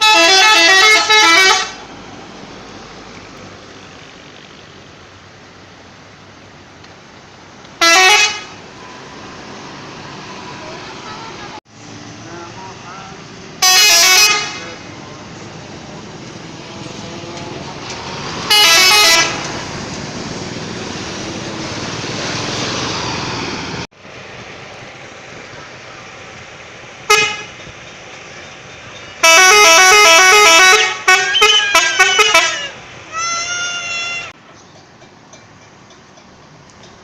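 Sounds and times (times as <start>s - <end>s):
bus musical horn tunes: 0.0s - 1.8s, 7.8s - 8.6s, 13.6s - 14.8s, 18.5s - 19.5s, 27.0s - 27.6s, 29.1s - 34.4s
quick horn toots: 29.2s - 34.4s.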